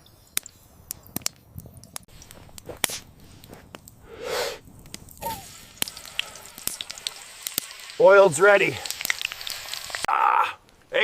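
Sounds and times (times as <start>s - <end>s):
campfire crackling: 0.0s - 11.0s
loud breathy huff: 4.0s - 4.6s.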